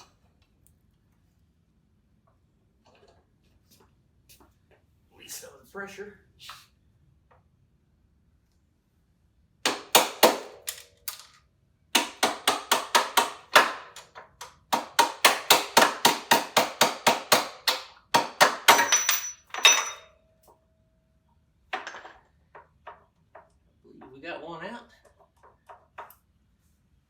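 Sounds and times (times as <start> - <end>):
metallic ring: 18.7 - 20.5.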